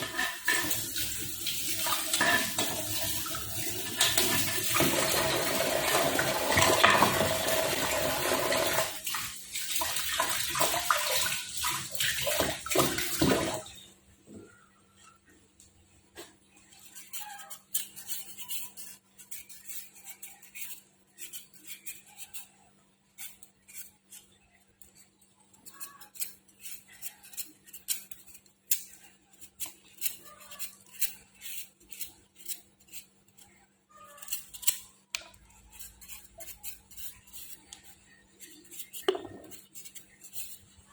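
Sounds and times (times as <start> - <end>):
utensils and dishes clicking: 0.0 - 11.4
tap water running: 0.0 - 13.9.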